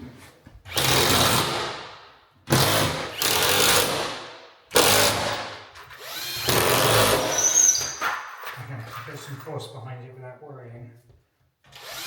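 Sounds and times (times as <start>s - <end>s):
cordless drill driving screws: 5.9s - 7.9s, 11.7s - 12.0s.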